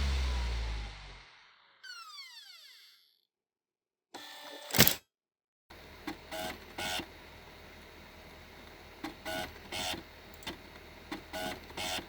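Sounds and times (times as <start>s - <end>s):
dvd drive head buzzing: 5.7s - 12.0s
low hum of drive: 5.7s - 12.0s
dvd drive click: 5.8s - 12.0s.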